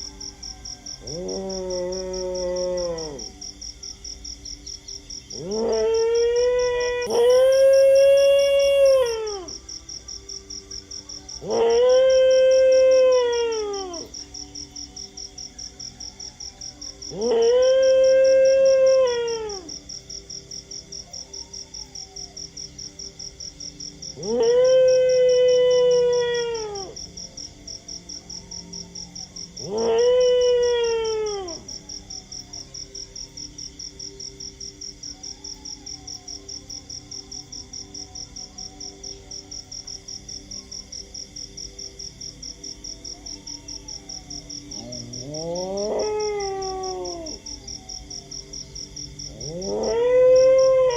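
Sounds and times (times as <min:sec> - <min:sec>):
dog howling: 0:00.0 - 0:03.5, 0:05.3 - 0:09.8, 0:11.2 - 0:14.7, 0:16.1 - 0:19.9, 0:24.1 - 0:27.3, 0:28.3 - 0:32.6, 0:43.1 - 0:48.2, 0:49.3 - 0:50.9
crickets chirping: 0:00.0 - 0:50.9.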